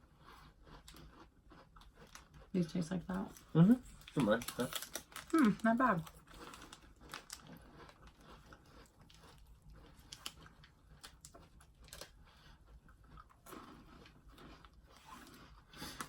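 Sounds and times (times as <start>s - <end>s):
crunching wafer stick: 3.3s - 12.2s.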